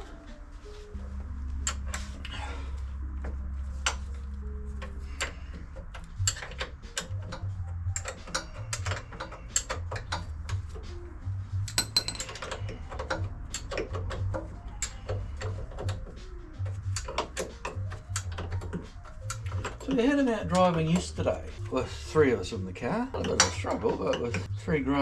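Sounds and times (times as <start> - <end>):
hand tools clinking on metal: 11.7 - 13.2.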